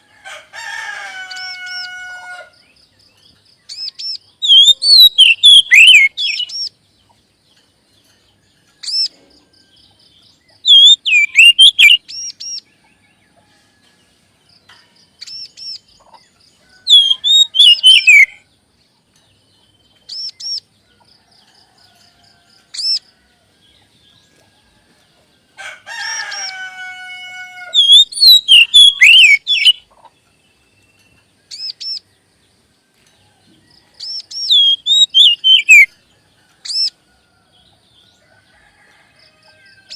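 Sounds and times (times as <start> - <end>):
magpie-robin whistled song: 3.7 - 6.8, 10.4 - 12.7, 16.8 - 18.4, 20.0 - 20.7, 27.7 - 29.9, 30.8 - 32.0, 34.0 - 36.0
harsh rasping bird call: 4.4 - 6.5, 10.6 - 12.0, 16.8 - 18.4, 25.9 - 29.8, 34.4 - 35.9.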